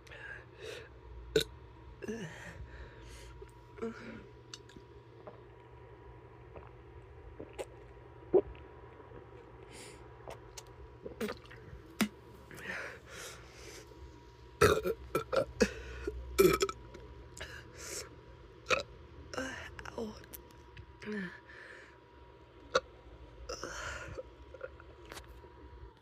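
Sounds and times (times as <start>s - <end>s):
person burping: 1.3s - 2.4s, 11.1s - 12.1s, 14.6s - 16.8s.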